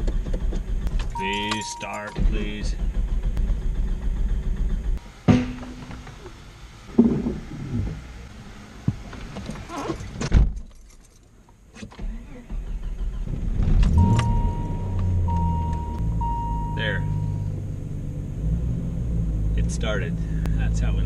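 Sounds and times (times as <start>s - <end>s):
car engine idling: 0.0s - 10.2s, 11.4s - 21.0s
engine ignition clicks and clunks: 0.0s - 17.7s
thin high tone: 1.2s - 2.6s, 14.0s - 17.5s.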